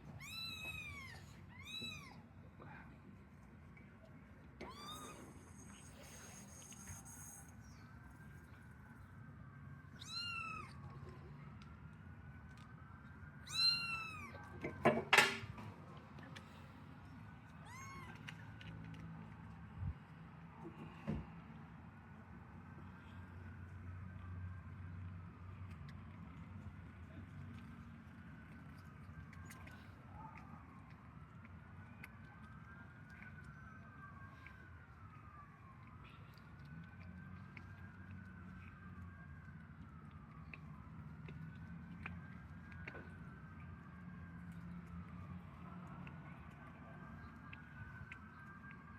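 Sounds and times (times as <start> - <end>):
faint wailing siren: 0.1 - 48.9
kitten meowing: 0.2 - 2.2, 4.6 - 5.7, 10.0 - 10.8, 13.5 - 14.4, 17.6 - 18.2.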